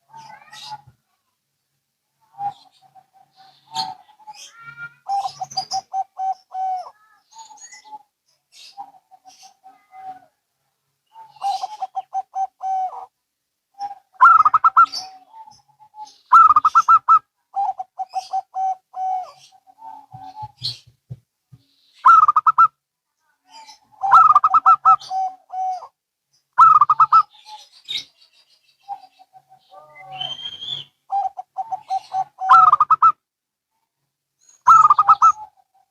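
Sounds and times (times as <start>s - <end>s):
doves cooing: 2.2s - 8.0s, 11.1s - 13.1s, 13.8s - 20.8s, 22.0s - 22.7s, 23.7s - 26.0s, 26.6s - 28.1s, 28.8s - 33.2s, 34.6s - 35.9s.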